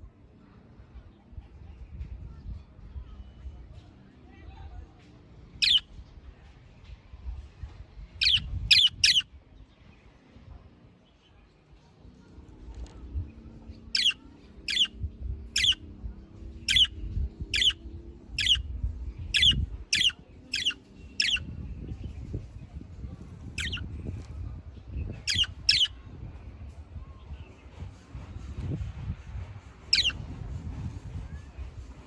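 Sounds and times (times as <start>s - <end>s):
budgerigar chirping: 5.6s - 5.8s, 8.2s - 9.2s, 14.0s - 14.9s, 15.6s - 15.8s, 16.7s - 16.9s, 17.6s - 17.8s, 18.4s - 18.6s, 19.4s - 21.4s, 23.6s - 23.8s, 25.3s - 25.9s, 29.9s - 30.2s.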